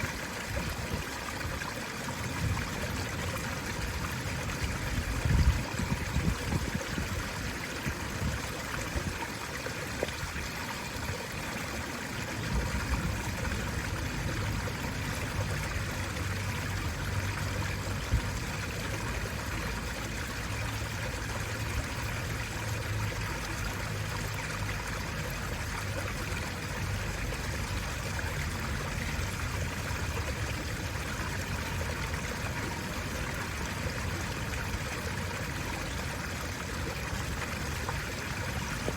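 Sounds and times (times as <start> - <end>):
water trickling from fountain: 0.0 - 38.9.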